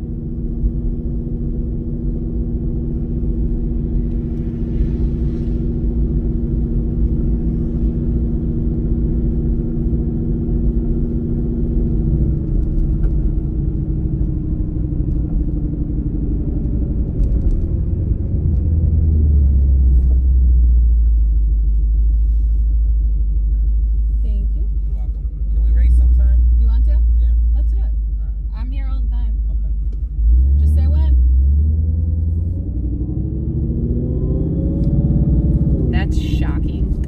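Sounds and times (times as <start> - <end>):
car engine running: 0.0 - 37.0
deep engine rumble: 0.0 - 37.0.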